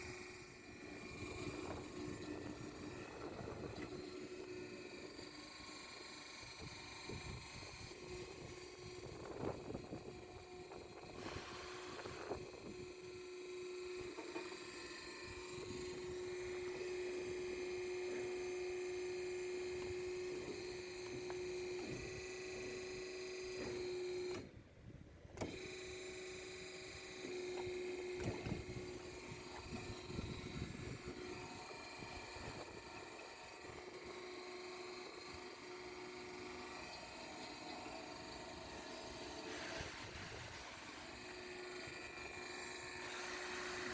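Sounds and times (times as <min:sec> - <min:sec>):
band saw humming: 0:00.0 - 0:24.5, 0:25.3 - 0:43.9.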